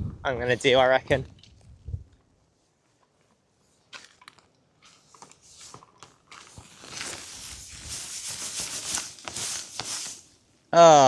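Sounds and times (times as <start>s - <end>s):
continuous rustling rub: 4.8s - 10.4s.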